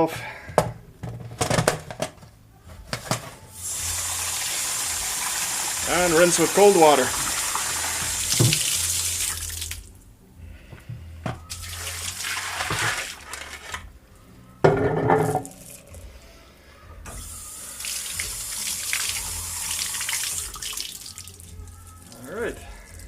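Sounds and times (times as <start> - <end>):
tap water running: 3.6 - 9.8, 11.5 - 13.8, 17.1 - 21.4.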